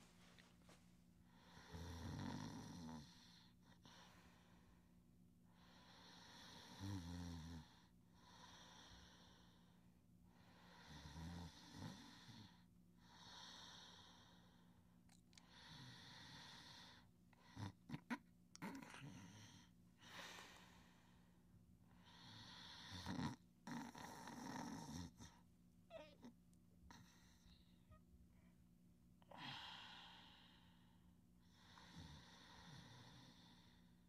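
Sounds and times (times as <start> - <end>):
child snoring: 1.4 - 3.5, 5.8 - 9.5, 10.6 - 12.6, 22.1 - 25.3, 31.6 - 33.8.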